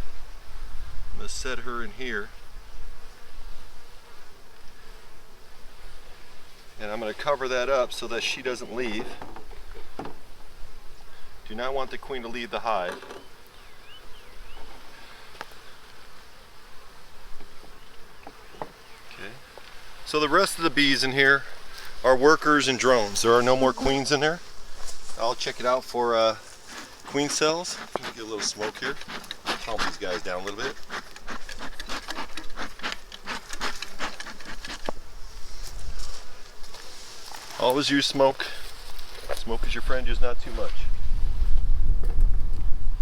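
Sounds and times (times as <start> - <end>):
bees buzzing: 0.0 - 39.2
bellows puffing: 26.4 - 34.9.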